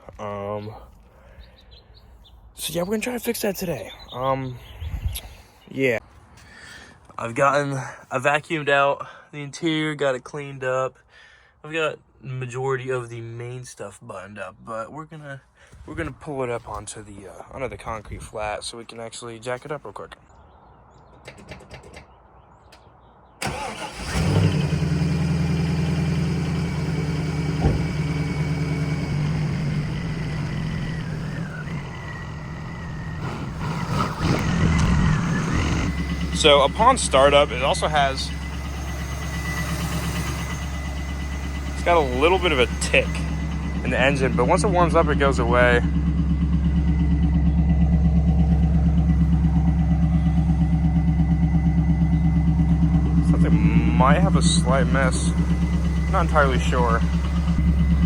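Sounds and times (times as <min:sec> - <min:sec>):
car engine cranking and idling: 0:23.4 - 0:58.0
engine ticking: 0:23.4 - 0:58.0.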